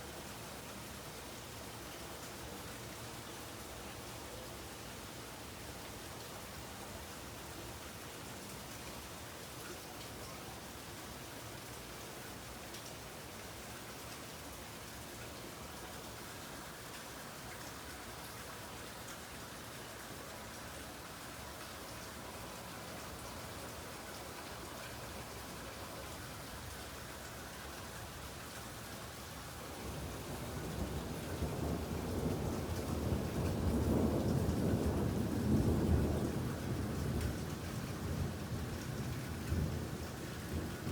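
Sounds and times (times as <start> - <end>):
steady rain falling: 0.0 - 40.9
low thunder rumble: 29.8 - 40.9.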